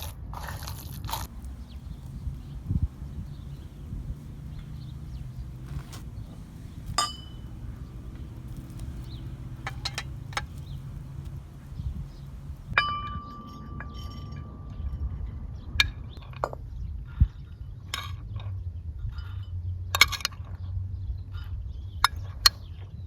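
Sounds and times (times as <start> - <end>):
steady low rumble: 1.2 - 12.8
cookware clinking: 1.3 - 13.0.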